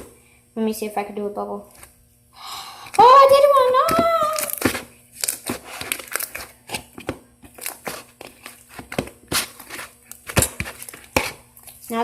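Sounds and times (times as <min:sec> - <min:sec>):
girl crying out: 0:03.0 - 0:04.6.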